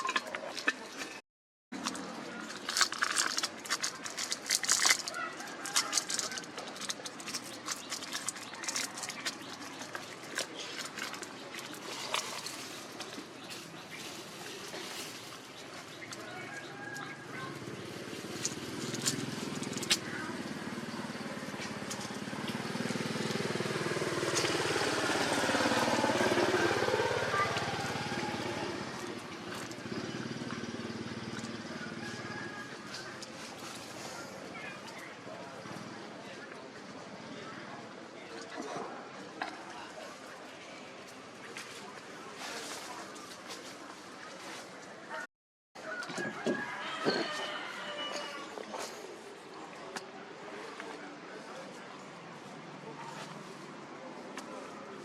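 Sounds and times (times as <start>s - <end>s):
small engine passing by: 14.0s - 36.1s.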